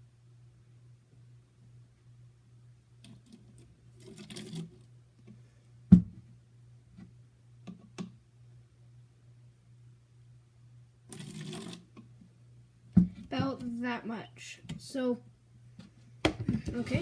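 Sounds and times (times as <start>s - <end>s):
steady low hum: 0.0s - 11.2s
liquid pouring into a bottle: 3.9s - 4.9s, 11.1s - 11.9s.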